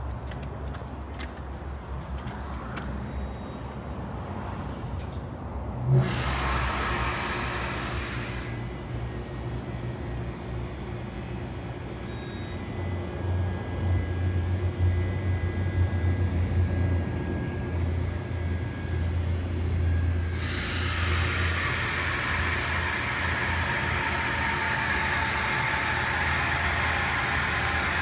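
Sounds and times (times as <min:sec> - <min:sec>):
faint high whine: 0:11.7 - 0:28.0.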